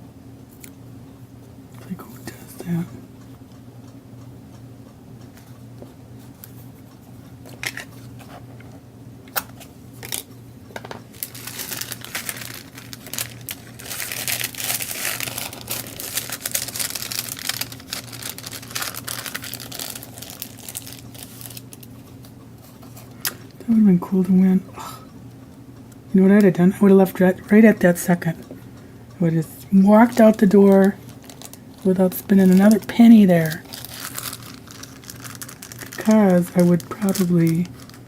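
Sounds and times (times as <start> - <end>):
low steady hum: 0.0 - 38.0
craft materials crinkling: 11.1 - 21.9, 29.9 - 38.0.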